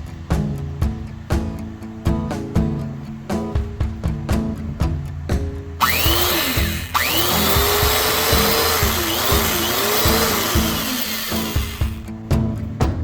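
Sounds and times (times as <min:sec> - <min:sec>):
music with a steady beat: 0:00.0 - 0:13.0
electric drill whining: 0:05.8 - 0:12.0.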